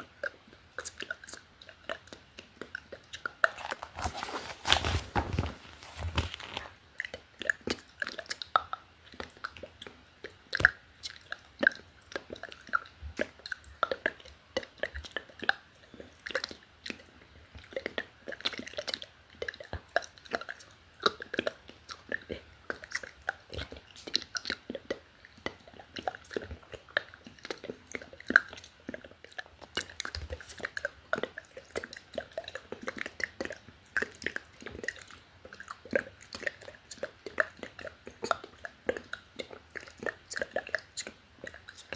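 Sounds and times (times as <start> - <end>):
wet mouth clicks and lip smacks: 16.2 - 41.9.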